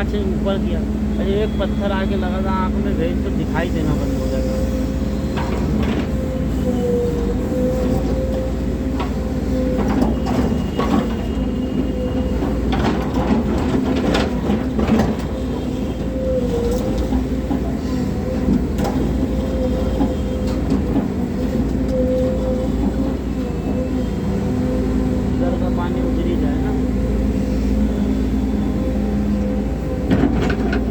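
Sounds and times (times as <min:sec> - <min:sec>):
excavator engine drone: 0:00.0 - 0:30.9
metallic clanks and knocks: 0:30.0 - 0:30.9.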